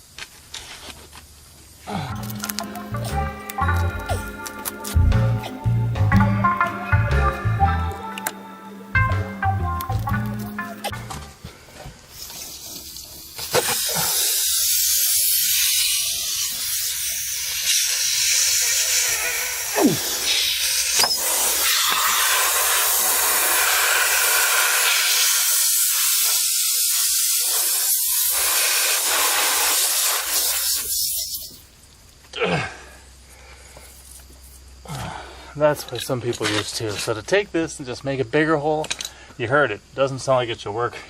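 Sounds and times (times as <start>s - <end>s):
air hissing from tire: 11.8s - 31.7s.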